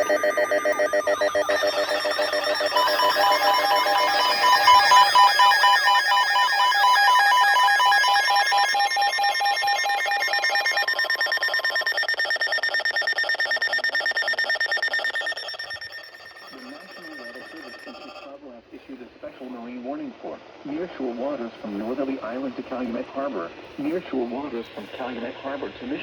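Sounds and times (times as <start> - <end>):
electronic beeping and warbling tones: 0.0 - 18.3
steady alarm tone: 0.0 - 18.3.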